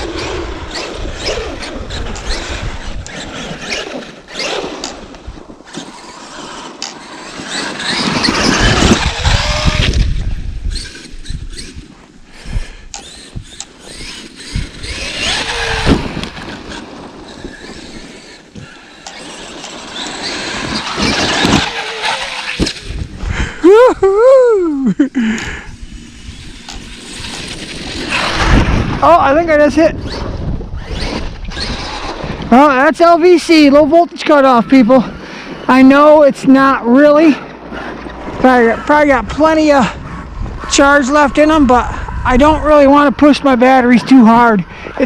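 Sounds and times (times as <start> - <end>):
electric motor whining: 0.0 - 32.5
tyres churning snow: 0.0 - 45.0.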